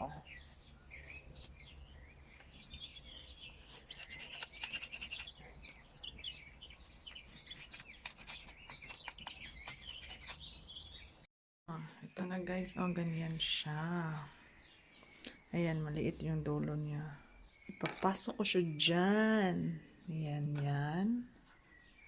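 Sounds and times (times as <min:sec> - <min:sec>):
faint birds chirping: 0:00.0 - 0:22.0
wood being scraped by hand: 0:03.6 - 0:05.3, 0:07.1 - 0:11.2.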